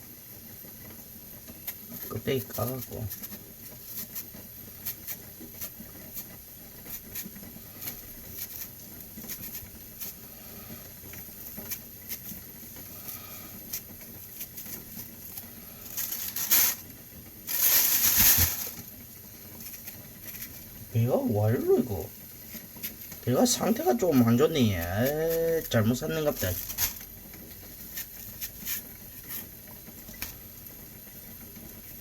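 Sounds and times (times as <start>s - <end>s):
knife scraping pear skin: 2.6s - 16.9s, 22.4s - 29.6s.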